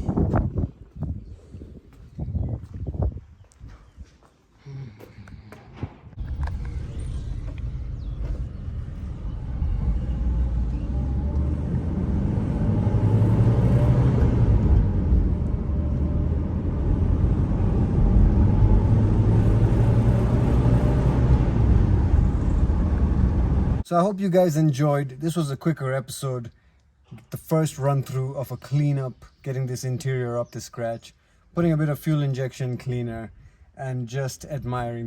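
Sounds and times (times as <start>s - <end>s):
car engine rumbling: 6.0s - 23.9s.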